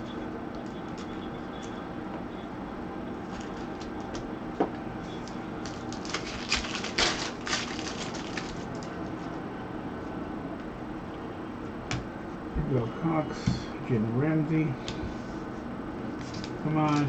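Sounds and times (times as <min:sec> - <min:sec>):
steady low hum: 0:00.0 - 0:17.0
card packaging crackling: 0:03.2 - 0:04.3, 0:05.1 - 0:09.1, 0:16.2 - 0:17.0.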